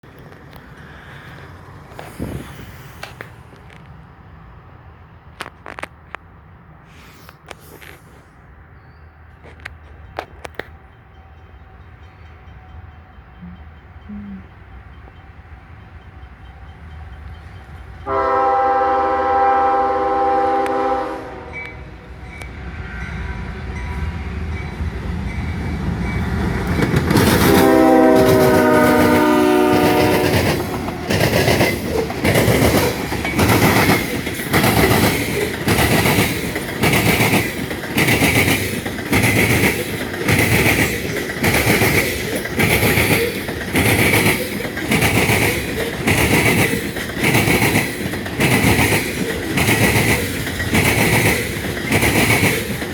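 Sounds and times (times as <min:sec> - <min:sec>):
clickety-clack of train wheels: 0:00.0 - 0:04.0, 0:05.3 - 0:06.3, 0:09.3 - 0:52.9
train rumble: 0:00.0 - 0:52.9
locomotive air horn blasts: 0:18.0 - 0:21.9, 0:27.4 - 0:31.1.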